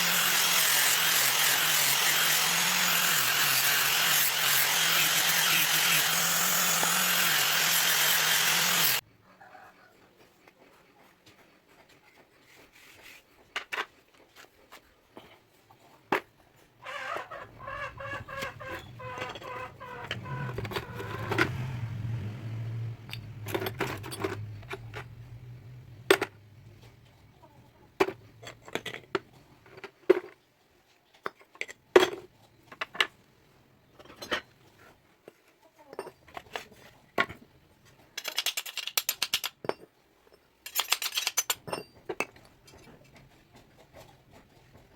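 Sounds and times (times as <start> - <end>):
low motor hum: 20.0 - 26.8
tools clinking on steel: 38.2 - 42.8.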